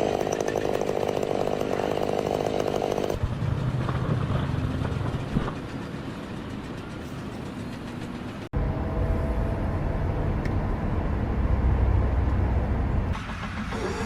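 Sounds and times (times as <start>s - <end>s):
low machine rumble: 3.2s - 14.0s.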